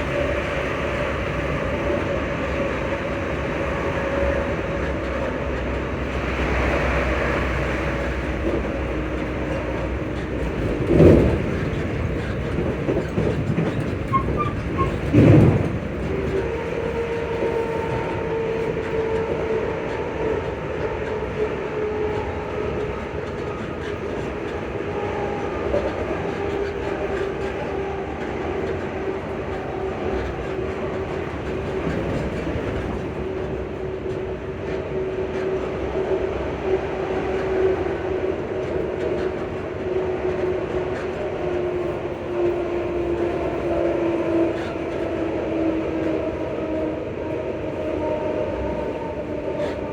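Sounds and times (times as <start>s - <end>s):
train rumbling on track: 0.0s - 49.9s.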